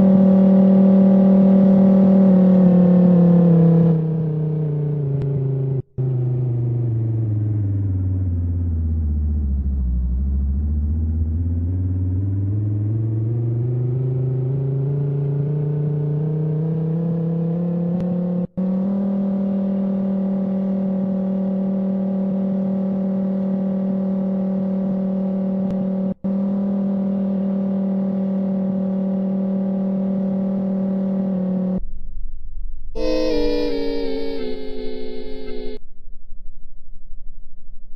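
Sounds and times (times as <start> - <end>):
warning siren winding up: 33.0 - 35.8.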